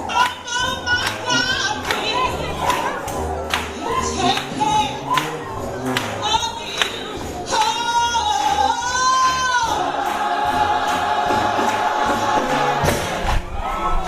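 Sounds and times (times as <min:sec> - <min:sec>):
instrumental accompaniment: 0:00.0 - 0:14.0
gospel choir singing: 0:03.8 - 0:14.0.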